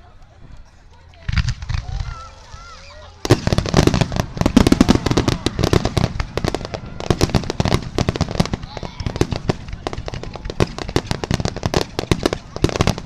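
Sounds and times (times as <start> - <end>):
spectators talking: 0.0 - 13.0
fireworks crackling: 0.6 - 13.0.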